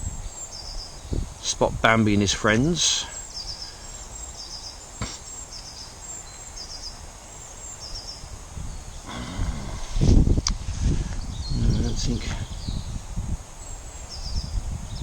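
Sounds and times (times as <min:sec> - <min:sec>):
wind rumbling on microphone: 0:00.0 - 0:03.6, 0:07.8 - 0:15.0.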